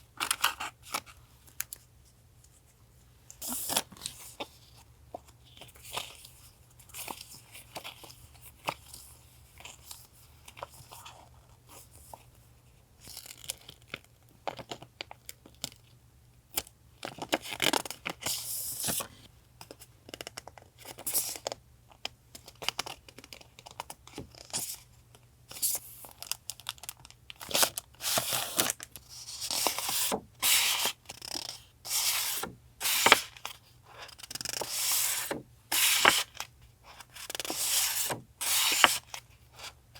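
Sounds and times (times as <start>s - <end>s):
paper tearing: 31.9s - 33.3s, 34.4s - 36.4s, 37.4s - 39.0s.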